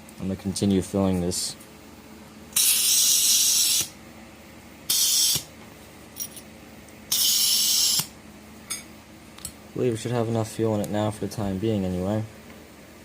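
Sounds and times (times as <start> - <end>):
butane gas hissing: 2.6 - 3.9, 4.9 - 5.4.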